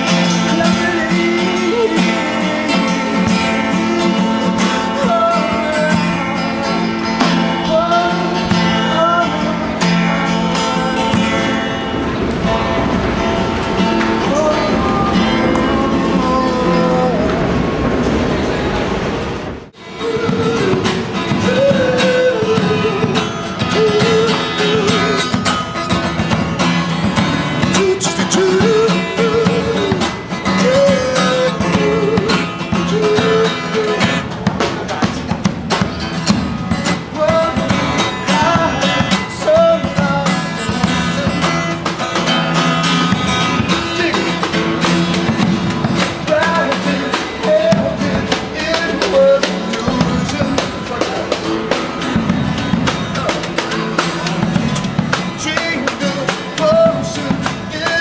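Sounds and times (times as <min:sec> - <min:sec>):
person singing: 0:00.0 - 0:11.6, 0:14.0 - 0:17.7, 0:19.8 - 0:25.4, 0:27.6 - 0:35.4, 0:43.5 - 0:51.8
acoustic guitar: 0:00.0 - 0:58.0
drums: 0:00.0 - 0:58.0.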